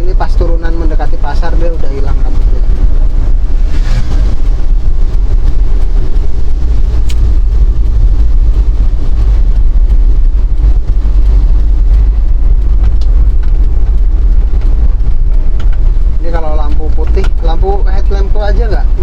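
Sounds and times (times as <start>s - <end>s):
vehicle moving: 0.0s - 19.0s
wind rumble on microphone: 0.0s - 19.0s
faint tick: 7.0s - 7.2s.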